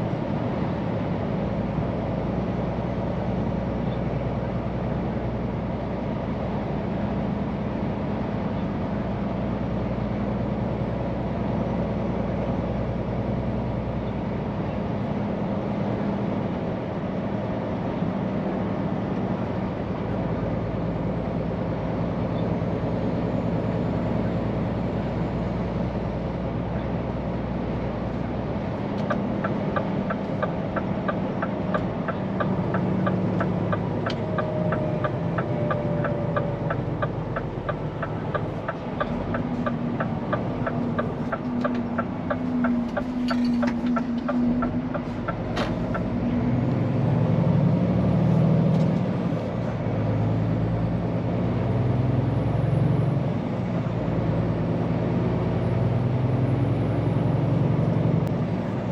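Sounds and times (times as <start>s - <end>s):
diesel engine: 0.0s - 58.9s
road noise: 0.0s - 58.9s
turn signal ticking: 28.8s - 46.8s.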